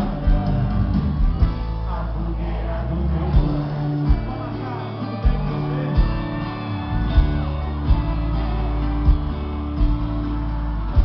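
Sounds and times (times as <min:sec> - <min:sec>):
band playing instrumental music: 0:00.0 - 0:11.0
strummed guitars: 0:00.0 - 0:11.0
heavy beat: 0:03.4 - 0:11.0.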